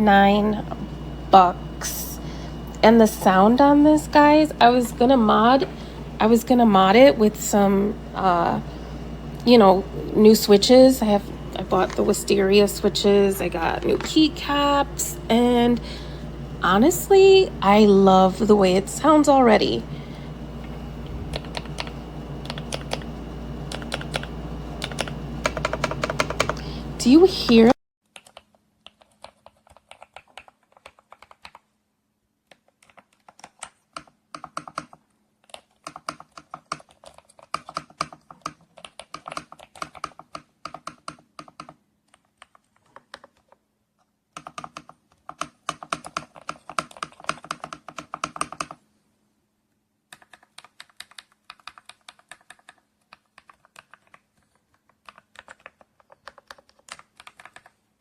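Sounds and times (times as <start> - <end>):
mechanical keyboard typing: 21.3 - 23.1, 23.7 - 26.6, 28.1 - 31.7, 32.5 - 43.6, 44.3 - 48.8, 50.1 - 57.8.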